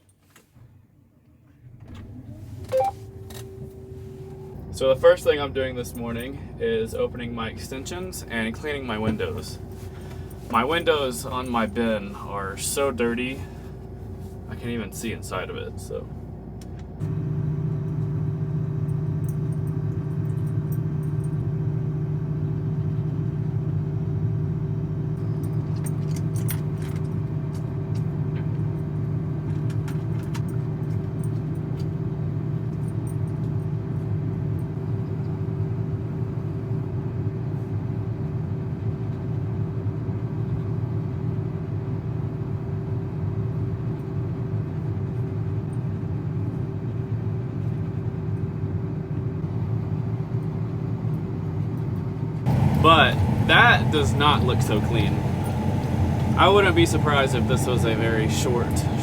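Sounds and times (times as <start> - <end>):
combine harvester engine running: 1.6 - 59.0
light clicks and rattles: 25.2 - 28.6.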